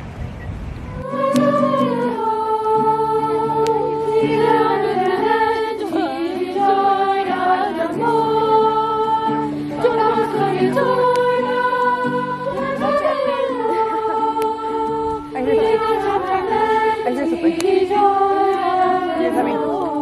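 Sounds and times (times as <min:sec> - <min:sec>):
sung melody with accompaniment: 0:00.9 - 0:20.0.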